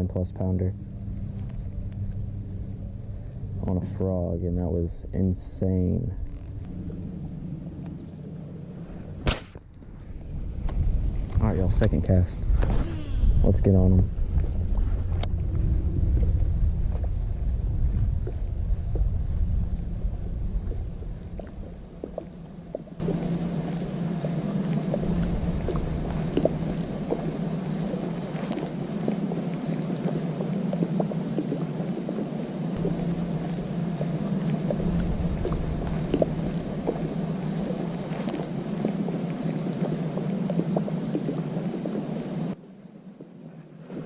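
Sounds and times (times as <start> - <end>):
wind rumbling on microphone: 0.0 - 42.6
fishing reel whirring: 12.7 - 13.6.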